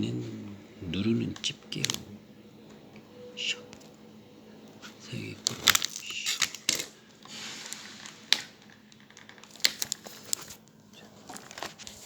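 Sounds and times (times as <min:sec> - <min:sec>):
plastic crinkling: 0:04.8 - 0:12.0.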